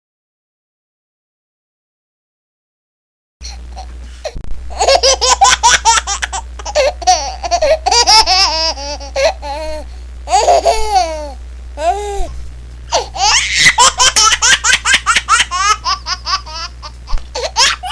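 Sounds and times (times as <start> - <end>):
steady low hum: 3.4 - 17.9
baby laughing: 4.7 - 12.3, 12.9 - 17.9.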